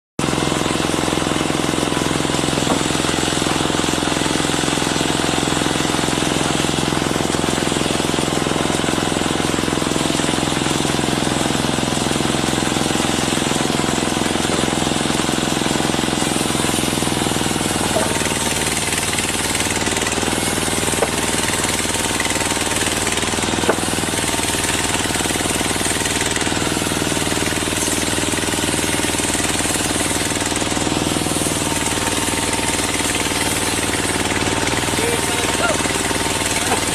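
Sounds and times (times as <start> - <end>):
machine running: 0.2 - 36.9.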